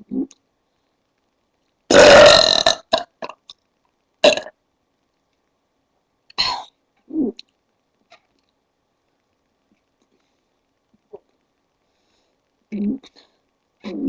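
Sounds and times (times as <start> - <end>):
woman belching: 1.9 - 3.4, 4.2 - 4.5.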